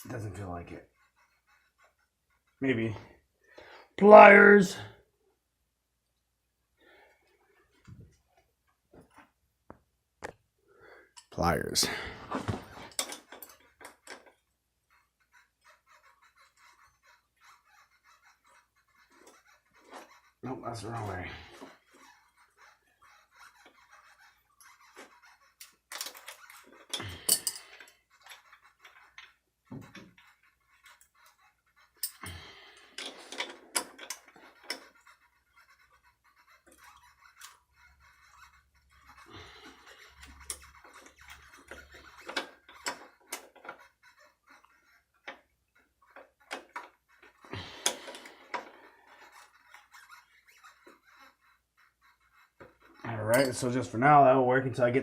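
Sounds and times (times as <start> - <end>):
metal parts and tools clinking: 25.6 - 29.4, 31.9 - 32.4, 52.6 - 53.9.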